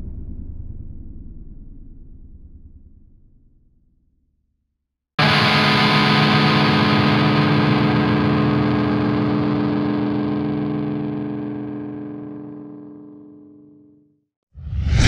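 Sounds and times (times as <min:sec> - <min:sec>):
distorted electric guitar chord: 0:05.2 - 0:13.9.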